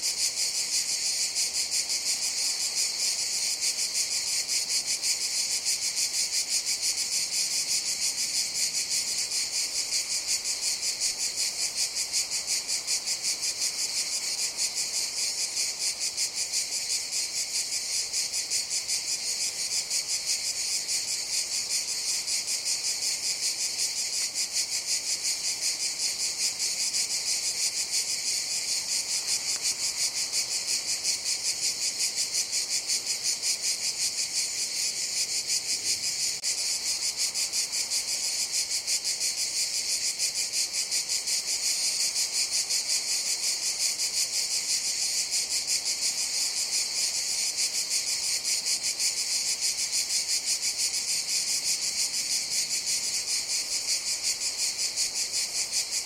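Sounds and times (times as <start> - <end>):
cicadas chorus buzzing: 0.0 - 56.0.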